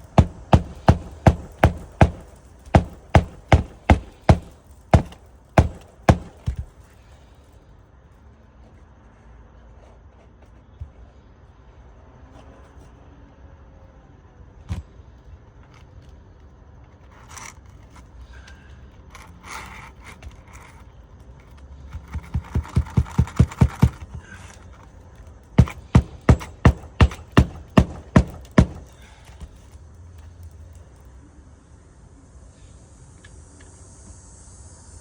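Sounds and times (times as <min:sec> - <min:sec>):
hammer striking roofing nails: 0:00.0 - 0:06.9, 0:21.9 - 0:24.6, 0:25.6 - 0:29.7
scraping: 0:00.0 - 0:07.3, 0:17.0 - 0:29.8.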